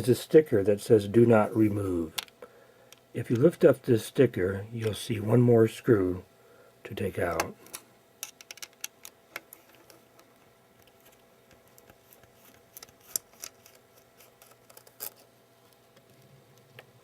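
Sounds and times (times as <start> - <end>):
small tools clicking and tapping: 7.4 - 16.9.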